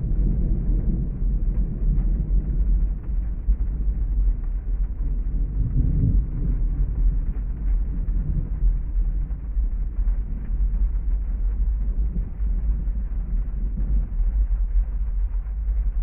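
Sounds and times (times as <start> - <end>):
distant thunder rumbling: 0.0 - 16.0
heavy rain: 0.0 - 16.0.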